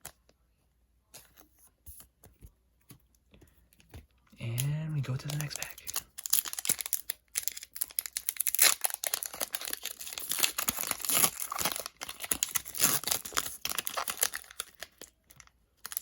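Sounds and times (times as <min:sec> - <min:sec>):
foil pack tearing and crinkling: 0:05.4 - 0:16.0.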